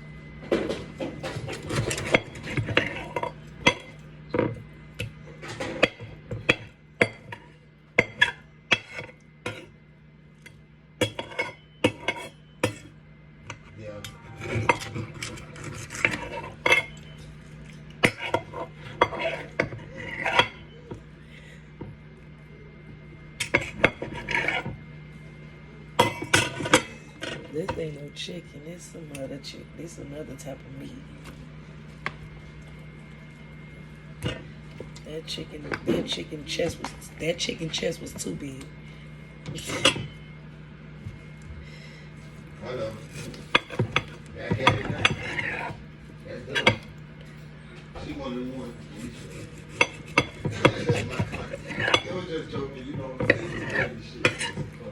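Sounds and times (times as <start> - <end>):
low hum: 0.0 - 44.4
dishes and utensils clinking: 11.0 - 12.9, 13.5 - 21.0, 26.0 - 27.8, 39.5 - 40.3, 43.2 - 45.8, 49.0 - 54.9.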